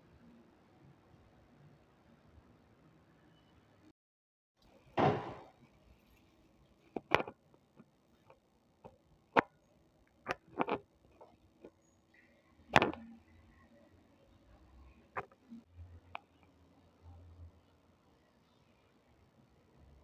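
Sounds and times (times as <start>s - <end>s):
sharp clicks and knocks: 6.9s - 9.6s, 10.2s - 11.8s, 12.7s - 13.1s.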